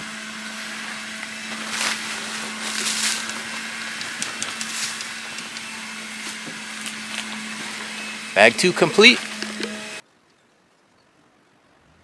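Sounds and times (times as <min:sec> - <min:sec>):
grass clippings rustling: 0:00.5 - 0:08.0
small clicks: 0:03.2 - 0:05.7.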